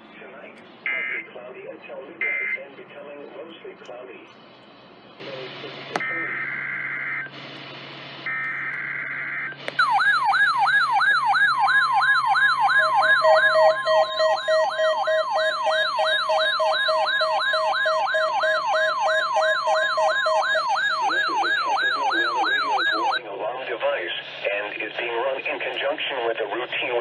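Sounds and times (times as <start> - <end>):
steady warning alarm tone: 5.9 - 23.2
warbling siren alarm: 6.0 - 23.2
alert data burst: 12.2 - 23.2.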